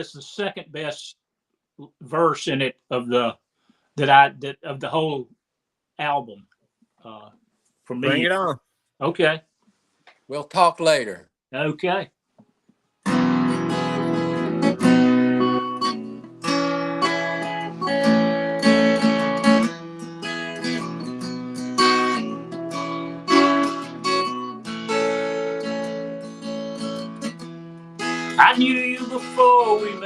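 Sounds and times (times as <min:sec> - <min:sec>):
acoustic guitar strumming: 0:13.0 - 0:30.0.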